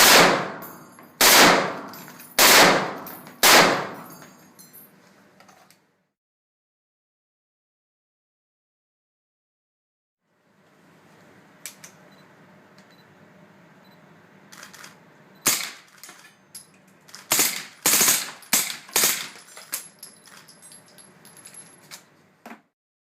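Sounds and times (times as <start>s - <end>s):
gunshots: 0.0s - 0.6s, 1.2s - 4.1s.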